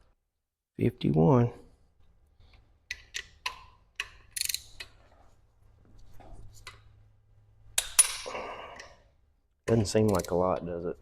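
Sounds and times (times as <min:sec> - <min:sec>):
torque wrench ratcheting clicks: 0:04.2 - 0:04.8.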